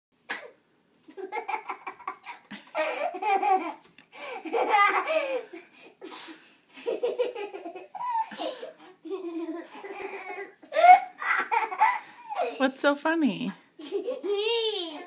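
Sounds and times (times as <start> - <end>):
young child laughing: 1.1 - 5.7, 13.8 - 15.0.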